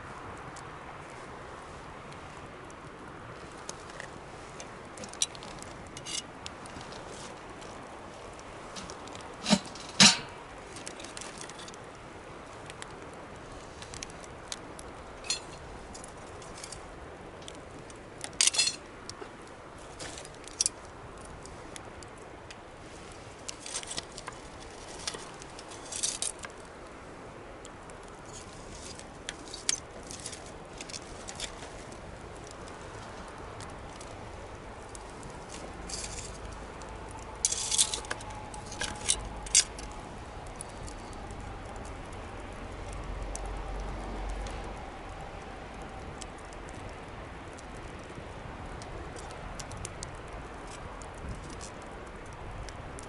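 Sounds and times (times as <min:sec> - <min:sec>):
bonfire crackling and popping: 0:00.0 - 0:53.0.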